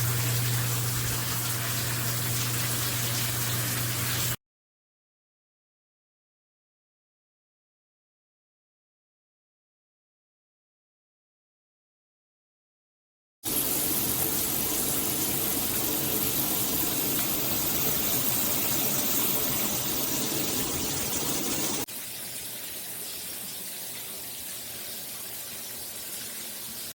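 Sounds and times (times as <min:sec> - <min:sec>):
shower water spraying: 0:00.0 - 0:04.4, 0:13.5 - 0:22.2.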